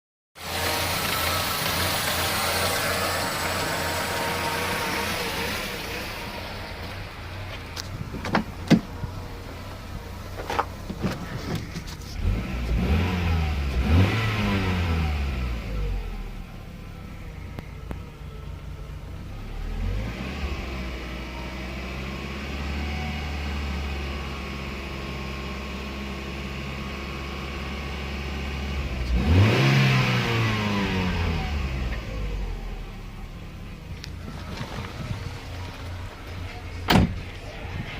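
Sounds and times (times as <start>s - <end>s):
car engine idling: 0.4s - 19.9s, 30.3s - 37.9s.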